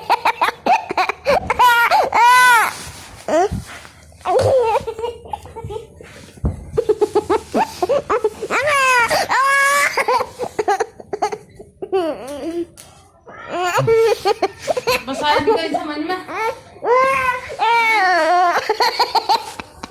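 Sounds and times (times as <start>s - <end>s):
baby laughing: 18.0s - 19.9s.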